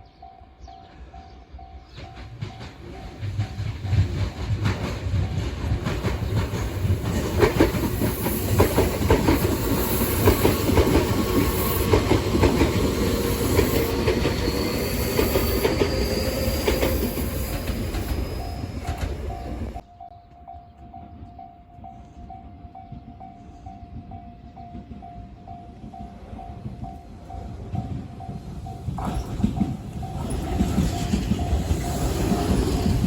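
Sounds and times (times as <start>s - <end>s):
train wheels clacking over rail joints: 1.9s - 19.8s, 26.6s - 33.0s
crossing bell dinging: 9.1s - 33.0s.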